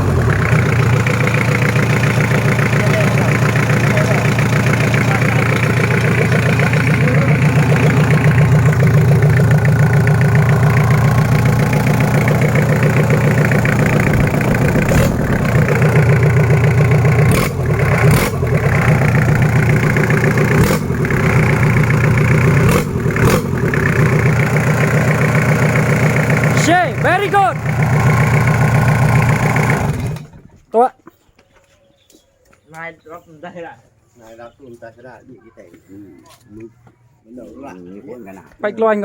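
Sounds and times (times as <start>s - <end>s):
diesel engine running: 0.0s - 30.4s.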